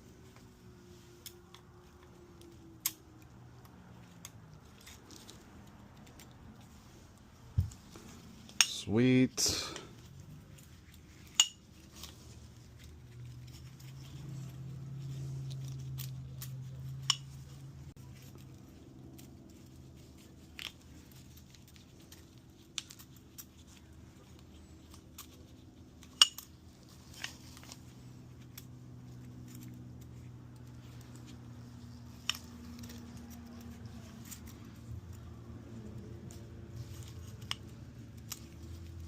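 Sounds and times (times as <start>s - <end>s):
low steady hum: 0.0s - 39.0s
metal tools clinking: 8.4s - 9.9s.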